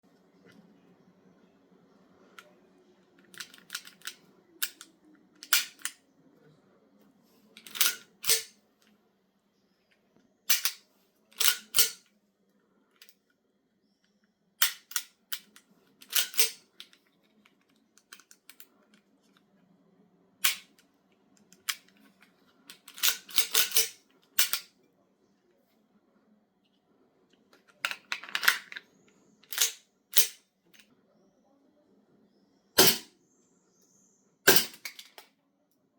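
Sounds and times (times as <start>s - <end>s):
pistol handling clicks: 3.3s - 6.0s, 10.5s - 10.8s, 14.6s - 16.9s, 20.4s - 20.7s, 22.8s - 24.7s.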